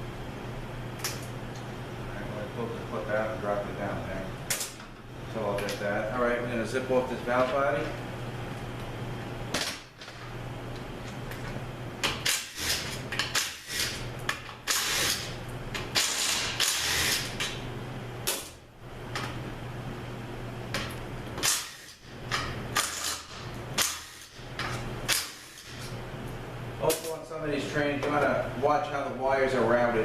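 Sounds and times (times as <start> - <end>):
steady low hum: 0.0 - 30.0
power tool spinning bolts: 14.6 - 17.4.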